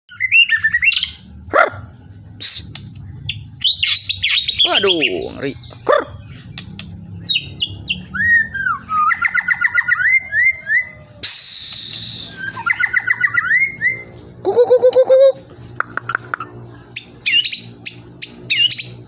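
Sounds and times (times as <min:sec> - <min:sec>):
bird singing whistled notes: 0:00.1 - 0:01.3, 0:02.2 - 0:15.4, 0:16.9 - 0:19.0
harsh hissing burst: 0:11.2 - 0:12.5.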